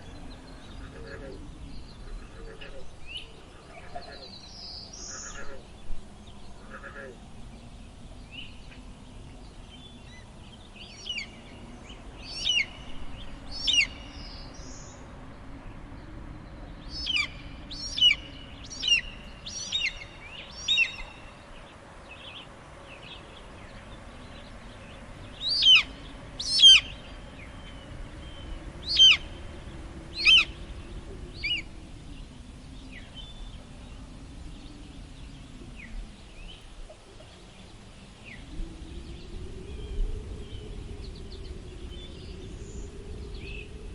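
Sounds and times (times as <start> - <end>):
low wind drone: 0.0 - 43.9
eagle piping cries: 26.5 - 26.8.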